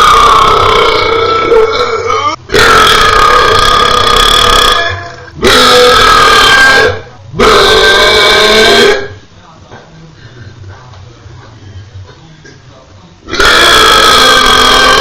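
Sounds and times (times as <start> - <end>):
person belching loudly: 0.0 - 9.2, 13.3 - 15.0.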